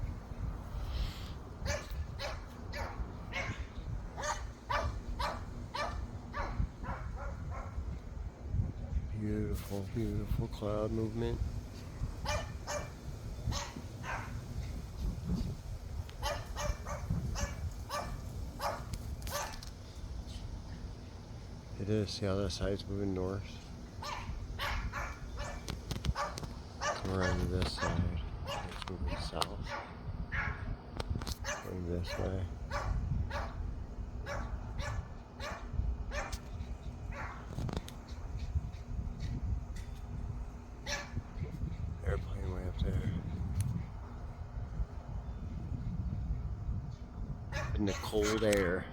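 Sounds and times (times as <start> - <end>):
dog barking: 1.6 - 7.8, 12.2 - 14.4, 16.2 - 19.6, 24.0 - 30.7, 31.4 - 33.6, 34.2 - 36.4, 37.1 - 37.5, 40.9 - 41.2, 47.5 - 48.4.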